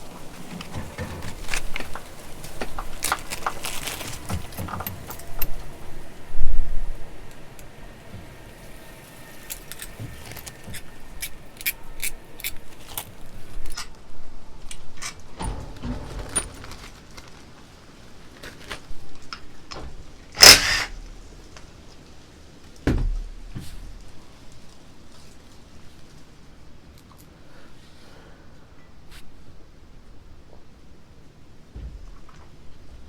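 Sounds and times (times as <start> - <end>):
metal tools and engine parts clinking: 0.1 - 13.9, 14.8 - 17.0
loud metallic clank: 20.4 - 21.2
dull thumps: 22.8 - 24.2.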